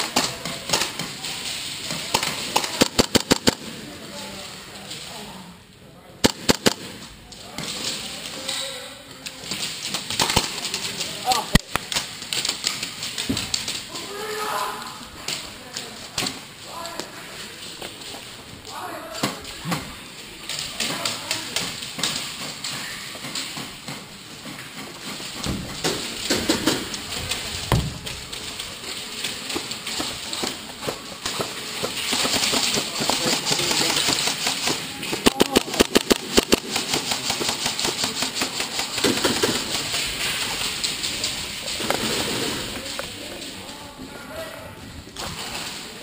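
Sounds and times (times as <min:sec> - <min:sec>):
rapid airsoft gun shots: 0:02.1 - 0:03.8, 0:06.2 - 0:07.1, 0:09.6 - 0:13.2, 0:32.1 - 0:40.2
footsteps: 0:06.5 - 0:46.0.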